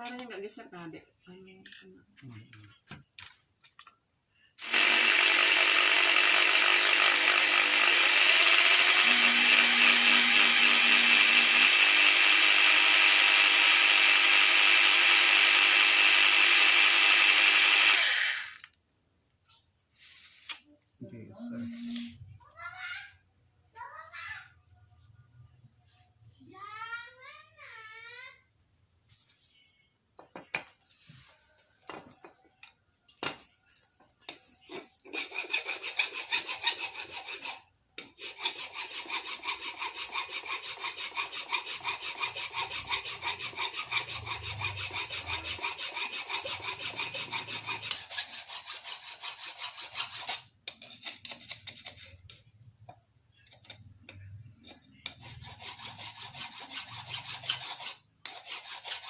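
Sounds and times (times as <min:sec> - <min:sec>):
hand sanding rubbing strokes: 0:19.9 - 0:20.5, 0:34.7 - 0:37.6, 0:38.2 - 0:50.5, 0:55.2 - 0:59.0.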